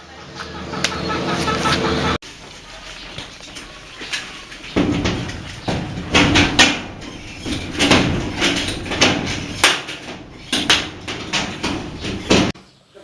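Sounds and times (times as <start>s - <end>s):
irregular knocks and bangs: 3.1s - 12.6s.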